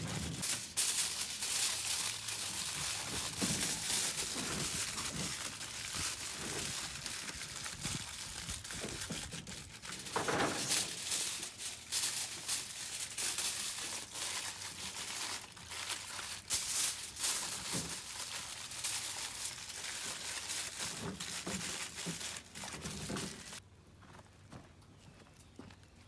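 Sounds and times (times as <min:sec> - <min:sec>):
aluminium foil crinkling: 0:00.0 - 0:23.6.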